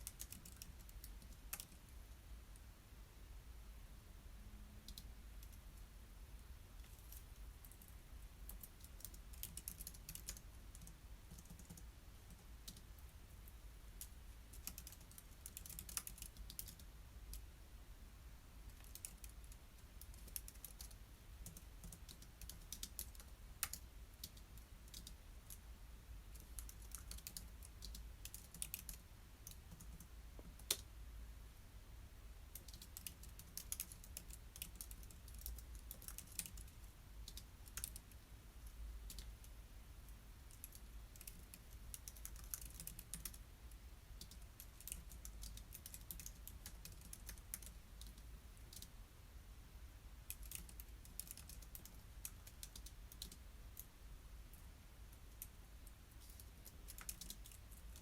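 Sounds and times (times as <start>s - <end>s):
typing on computer keyboard: 0.0s - 1.8s, 8.5s - 12.9s, 14.0s - 17.4s, 18.7s - 25.6s, 26.3s - 30.8s, 32.6s - 38.2s, 39.0s - 39.3s, 40.5s - 43.4s, 44.2s - 48.9s, 50.3s - 53.9s, 56.2s - 58.0s.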